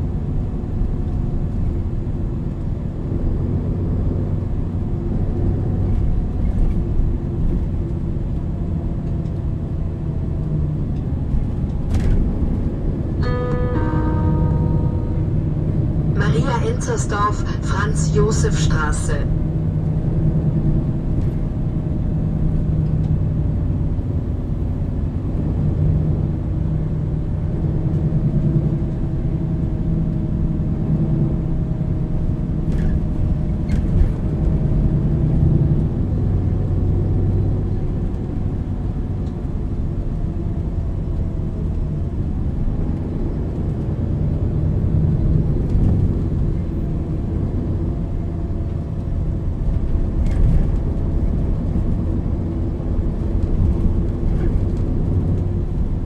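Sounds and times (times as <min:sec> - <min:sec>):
bus diesel engine running: 0:00.0 - 0:56.0.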